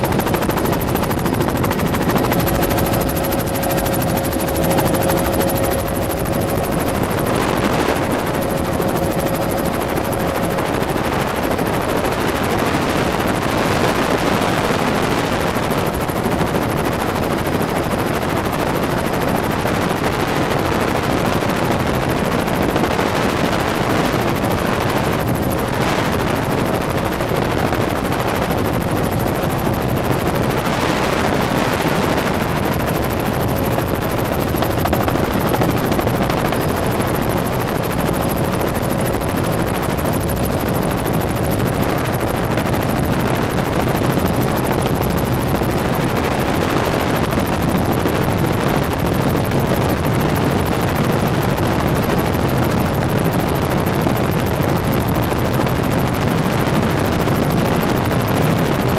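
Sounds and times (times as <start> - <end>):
helicopter rotor and engine noise: 0.0 - 58.9.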